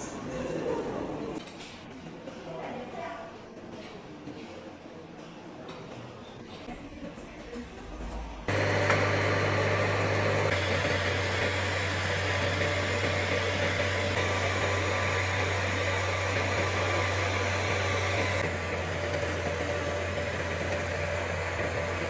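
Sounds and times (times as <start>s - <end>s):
welding machine humming and hissing: 8.5s - 22.0s.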